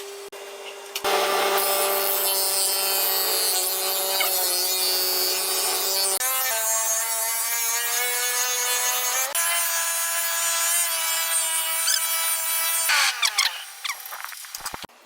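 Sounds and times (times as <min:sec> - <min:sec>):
power tool motor whine: 0:01.0 - 0:14.9
grinding hiss: 0:10.6 - 0:14.9.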